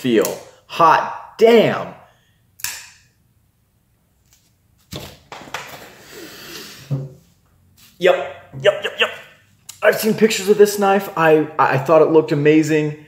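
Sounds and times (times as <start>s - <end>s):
breathy exhale: 6.0s - 7.0s.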